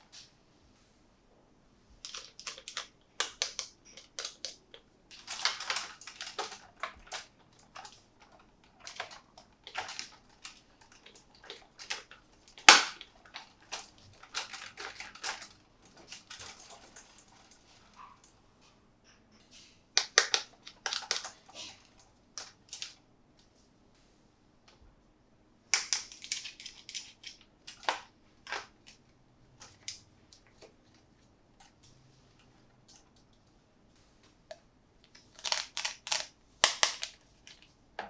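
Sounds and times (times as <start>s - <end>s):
packaging crinkling and clicking: 2.0s - 17.6s, 20.0s - 21.4s, 22.4s - 23.0s, 25.7s - 29.0s, 35.0s - 37.7s.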